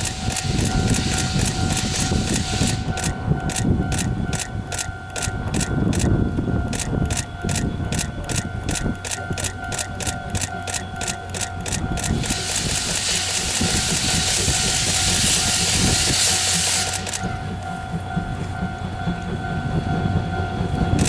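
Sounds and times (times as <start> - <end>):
loud steady hiss: 0.0 - 3.1, 12.1 - 17.1
steam locomotive chuffing: 0.0 - 21.0.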